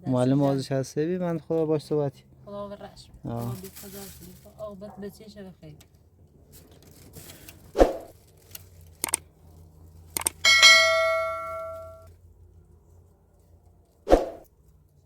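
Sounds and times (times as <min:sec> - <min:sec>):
metal object struck ringing: 0:10.5 - 0:12.0.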